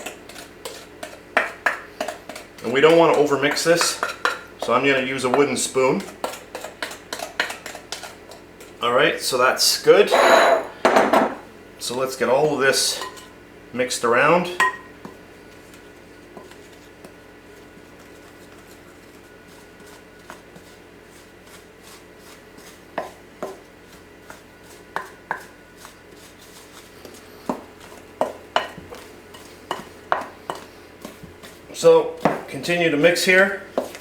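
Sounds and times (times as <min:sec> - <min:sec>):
wooden spoon stirring batter: 0:00.0 - 0:10.1, 0:11.8 - 0:34.0.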